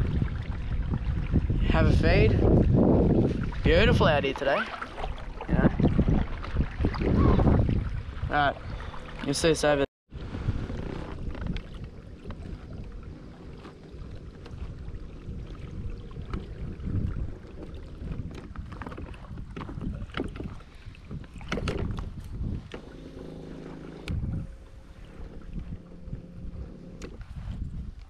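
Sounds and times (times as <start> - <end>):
water splashing against hull: 0.0 - 28.0
wind rumbling on microphone: 0.0 - 28.0.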